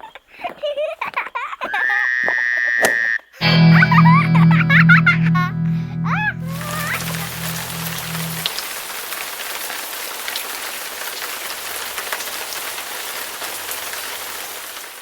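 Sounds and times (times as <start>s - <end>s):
rain pattering: 7.4s - 15.0s.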